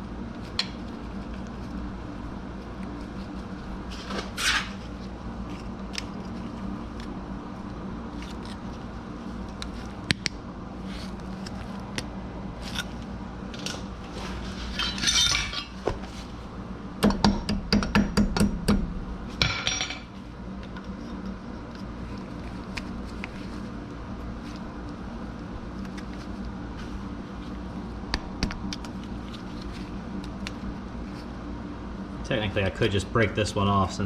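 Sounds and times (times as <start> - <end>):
steady low hum: 0.0 - 34.0
hand tools clinking on metal: 14.7 - 15.8.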